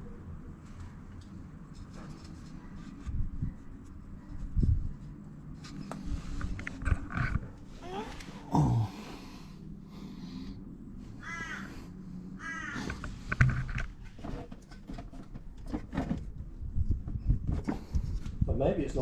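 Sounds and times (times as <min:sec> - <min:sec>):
low steady hum: 0:00.0 - 0:19.0
crow cawing: 0:11.2 - 0:13.0.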